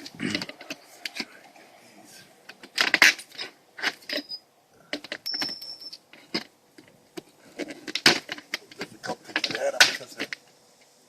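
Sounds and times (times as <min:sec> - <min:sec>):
nail squeaking: 0:03.0 - 0:04.4.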